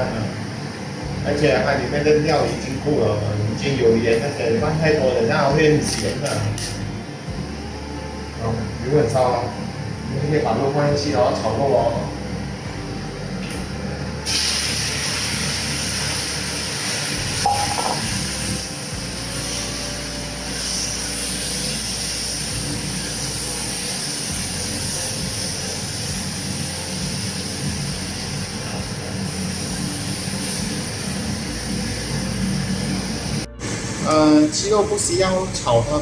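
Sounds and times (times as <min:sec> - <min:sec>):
chicken sizzling in hot oil: 0:14.2 - 0:33.9.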